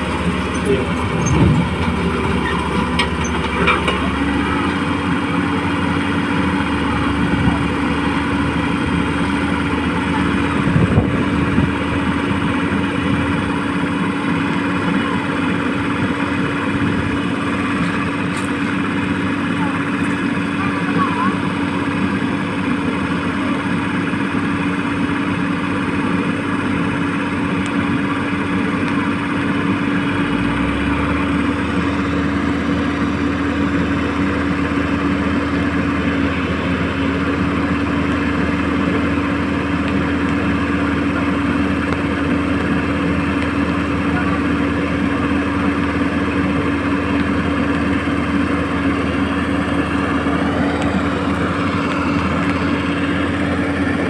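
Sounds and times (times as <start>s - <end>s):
deeper hum: 0.0s - 13.6s
hydraulic pump motor humming: 0.0s - 14.6s.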